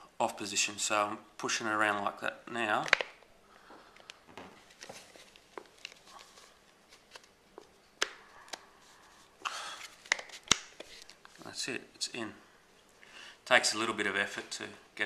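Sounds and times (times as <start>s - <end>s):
plastic parts clicking: 2.8s - 3.2s.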